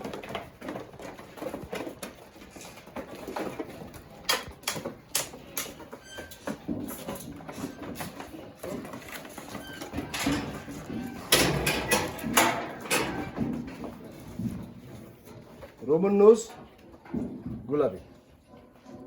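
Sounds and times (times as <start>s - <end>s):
goat hooves tapping and scuffling: 0.0s - 19.0s.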